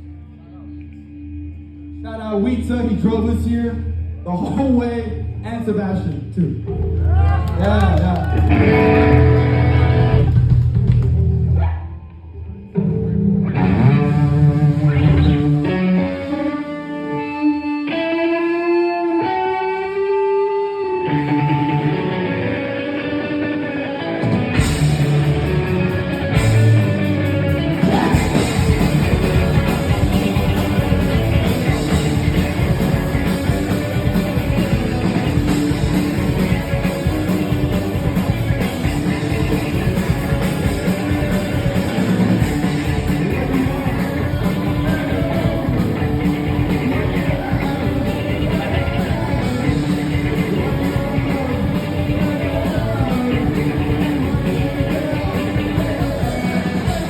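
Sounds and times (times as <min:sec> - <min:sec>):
live punk rock band: 0:06.8 - 0:11.9, 0:12.5 - 0:57.0.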